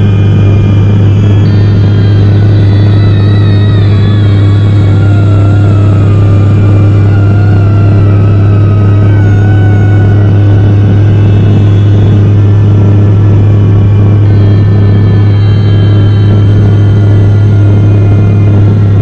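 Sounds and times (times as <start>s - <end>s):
car driving on highway drone: 0.0s - 19.0s
faint wavering musical tones: 0.0s - 19.0s.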